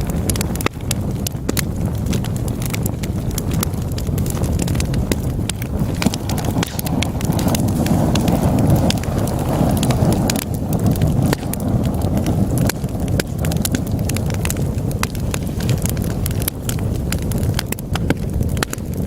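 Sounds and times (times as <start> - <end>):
logs crackling and popping: 0.0 - 19.0
low rumble of flames: 0.0 - 19.0.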